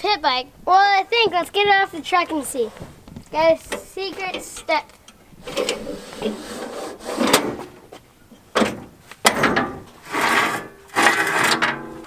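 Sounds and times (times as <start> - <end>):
scraping: 2.4 - 12.0.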